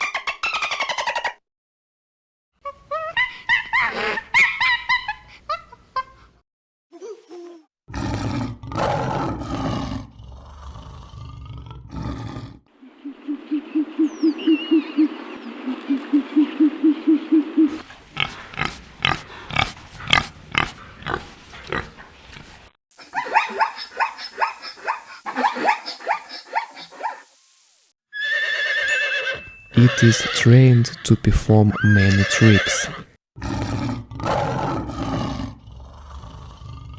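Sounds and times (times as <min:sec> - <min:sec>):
rapid pulsing animal call: 0:12.8 - 0:21.0, 0:29.6 - 0:33.1
loud rough animal noise: 0:17.7 - 0:22.7.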